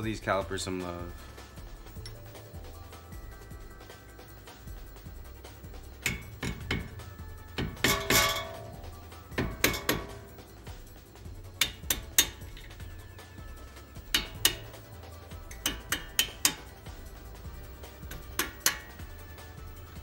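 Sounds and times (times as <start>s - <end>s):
background music: 0.0s - 20.0s
metal tools clinking: 7.6s - 10.4s.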